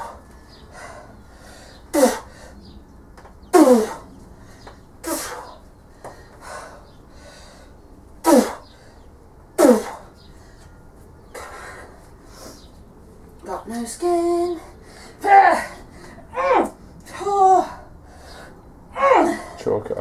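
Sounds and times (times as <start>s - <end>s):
woman grunting with effort: 15.2s - 17.8s, 18.9s - 19.6s.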